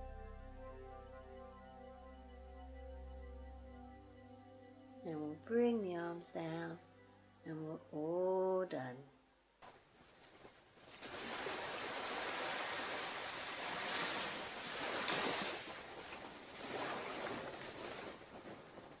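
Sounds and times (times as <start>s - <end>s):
ocean surf washing onto beach: 10.9s - 19.0s.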